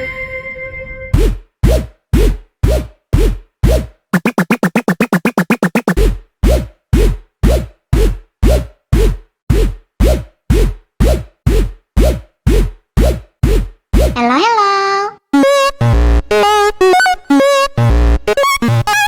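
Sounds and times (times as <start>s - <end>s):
stuttering drum roll: 1.2s - 14.2s
booming electronic drum beat: 1.2s - 14.3s.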